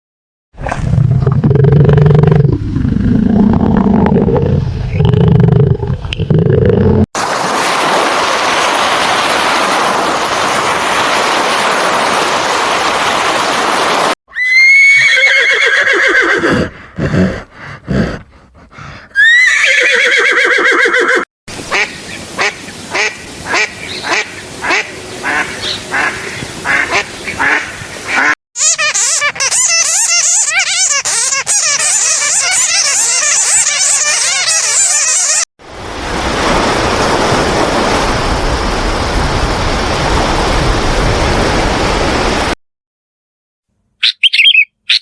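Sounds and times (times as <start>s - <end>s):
horse whinnying: 14.3s - 18.2s, 19.1s - 21.2s
short repeated animal calls: 44.0s - 45.0s.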